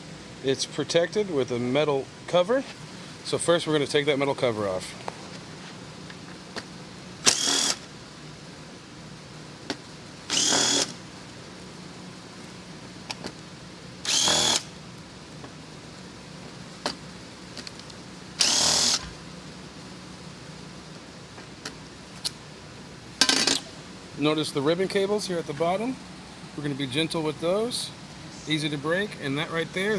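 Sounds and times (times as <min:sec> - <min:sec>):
power screwdriver whirring: 0:07.2 - 0:07.9, 0:10.3 - 0:11.0, 0:14.0 - 0:14.7, 0:18.4 - 0:19.2.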